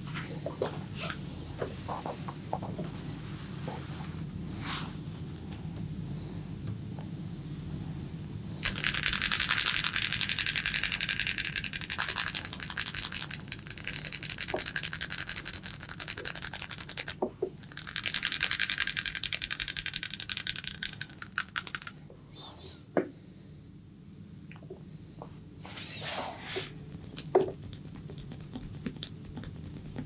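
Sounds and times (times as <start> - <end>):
hand massage strokes ticking: 8.6 - 22.0, 26.9 - 30.0.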